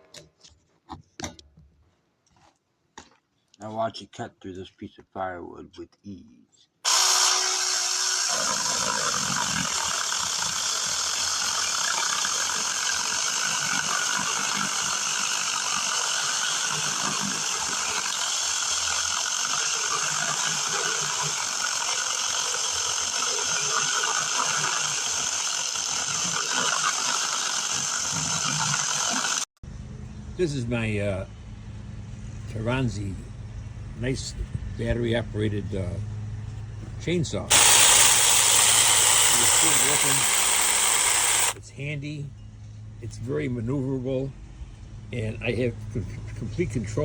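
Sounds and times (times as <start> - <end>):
mini chainsaw cutting wood: 6.8 - 29.5, 37.5 - 41.6.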